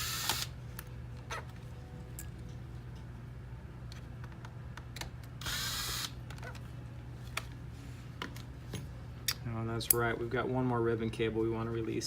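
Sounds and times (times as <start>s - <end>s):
powered screwdriver whirring: 0.0s - 0.5s, 5.4s - 6.2s
steady low hum: 0.0s - 12.0s.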